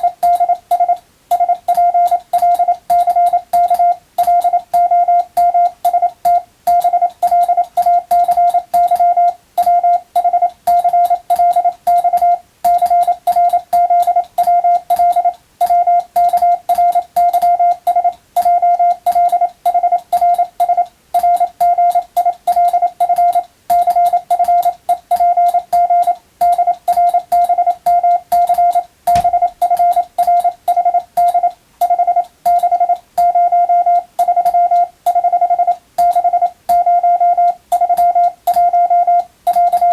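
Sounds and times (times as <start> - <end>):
morse code tone: 0.0 - 39.9.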